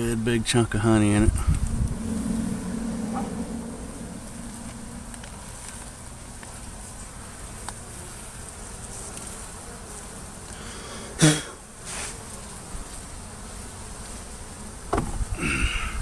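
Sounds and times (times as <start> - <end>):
bees buzzing: 0.0 - 16.0
loud sound falling in pitch: 1.6 - 5.5
faint ticks: 7.6 - 7.8, 9.1 - 9.4.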